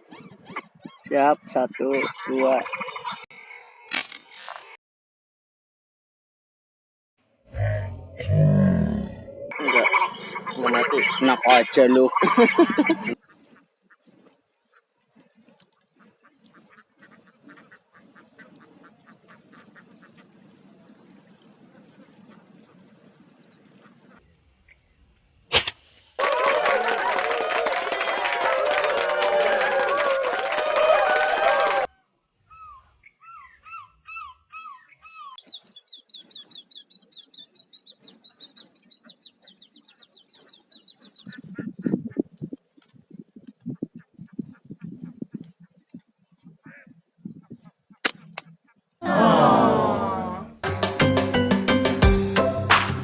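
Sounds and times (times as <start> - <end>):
birds calling rapidly: 0.0 - 3.8, 9.5 - 24.2, 32.5 - 49.0
thin high bird chirps: 32.5 - 42.2.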